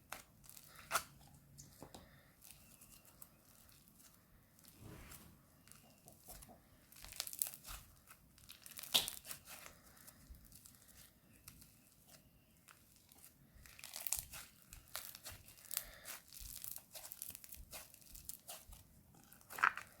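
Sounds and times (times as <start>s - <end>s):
crunchy slime crackling: 5.8s - 20.0s.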